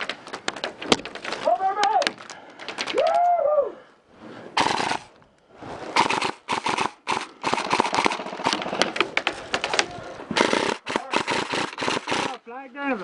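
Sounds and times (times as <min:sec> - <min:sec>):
person yelling: 0:01.4 - 0:02.1, 0:02.9 - 0:03.8
airsoft guns firing bursts: 0:04.6 - 0:05.1, 0:06.0 - 0:09.8, 0:10.4 - 0:12.4.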